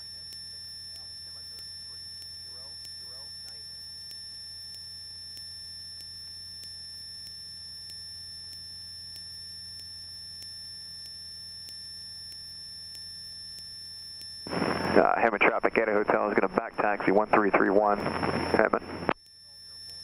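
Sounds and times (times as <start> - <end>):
faint regular ticks: 0.0 - 14.7, 19.1 - 20.0
electrical hum and whine: 0.0 - 20.0.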